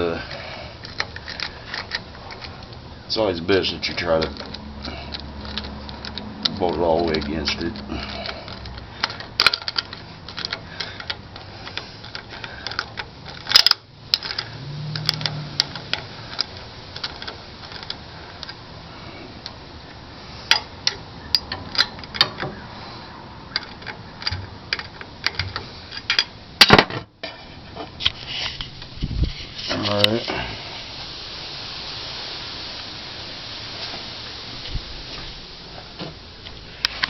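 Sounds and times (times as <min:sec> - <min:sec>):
hand ratchet clicking: 0:03.8 - 0:18.6
metal clinking: 0:03.9 - 0:18.6.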